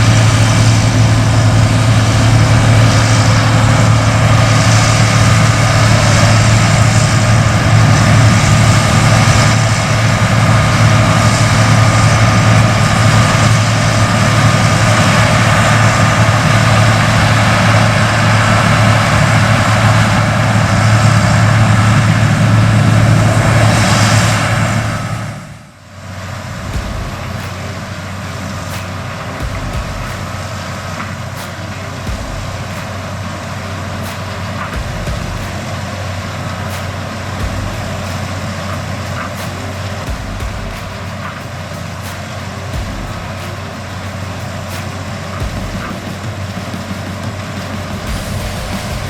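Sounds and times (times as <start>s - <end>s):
combine harvester engine drone: 0.0s - 49.0s
mechanical harvesting noise: 0.0s - 49.0s.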